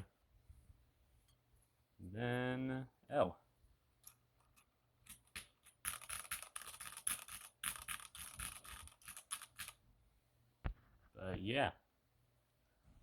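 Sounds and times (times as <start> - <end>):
mechanical keyboard typing: 5.1 - 9.8.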